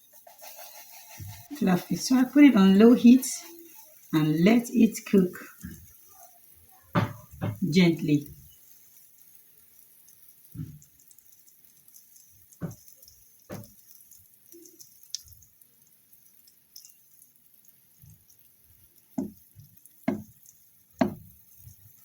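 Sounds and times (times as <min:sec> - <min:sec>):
batter plopping into pan: 0:06.8 - 0:15.6, 0:16.2 - 0:22.0.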